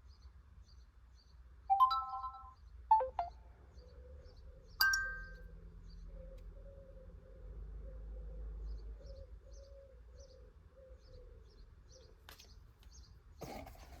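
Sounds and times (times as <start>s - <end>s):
bird chirp ringtone: 1.7s - 3.4s, 4.8s - 5.5s.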